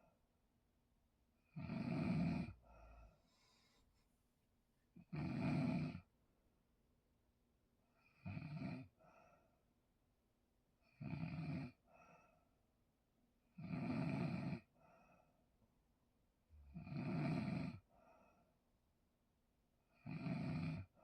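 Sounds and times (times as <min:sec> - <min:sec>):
person snoring loudly: 0:05.1 - 0:06.0, 0:16.7 - 0:17.8.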